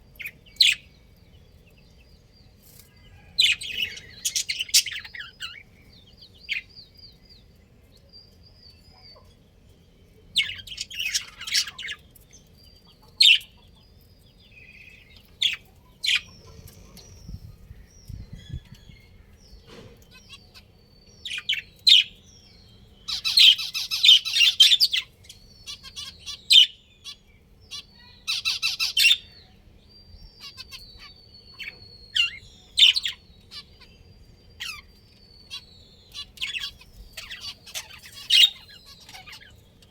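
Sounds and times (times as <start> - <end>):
budgerigars chirping: 3.2 - 5.7, 10.4 - 12.0, 14.7 - 19.3, 20.1 - 22.2, 23.0 - 29.5, 30.2 - 39.7.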